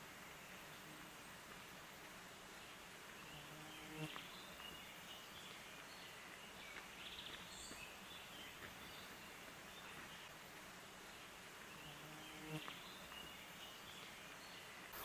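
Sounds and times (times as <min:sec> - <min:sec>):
faint ticks: 0:04.0 - 0:04.8.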